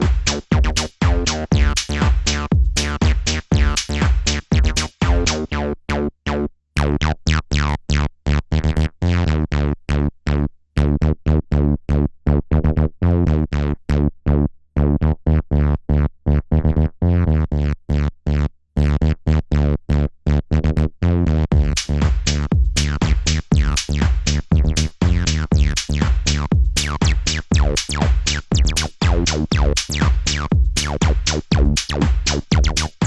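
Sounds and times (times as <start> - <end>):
synthesizer acid bassline: 0.0 - 6.5, 21.5 - 33.0.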